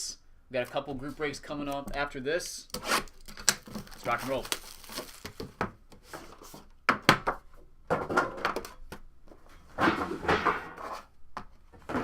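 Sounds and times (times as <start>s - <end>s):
packaging rubbing and sliding: 2.8s - 5.5s.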